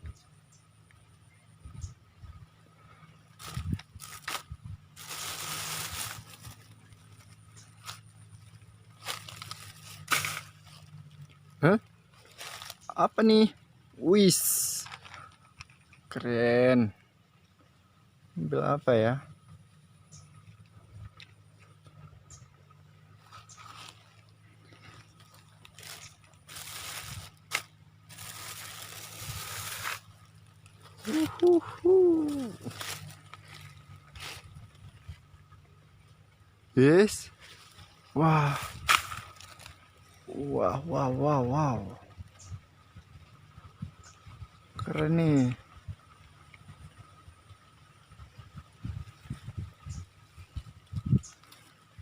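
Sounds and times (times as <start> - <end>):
rustling handling noise: 3.3 - 13.4, 14.4 - 16.1, 23.1 - 35.5, 37.3 - 40.2.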